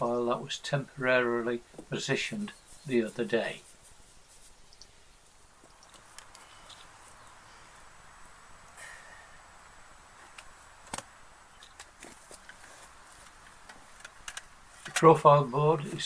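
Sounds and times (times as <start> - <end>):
faint outdoor ambience: 0.0 - 16.0
light clicks and taps: 5.6 - 6.9.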